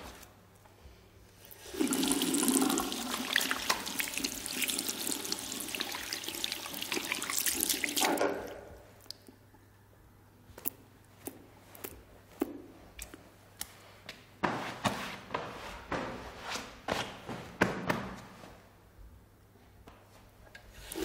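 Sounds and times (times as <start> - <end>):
tap water running into washbasin: 1.5 - 8.7.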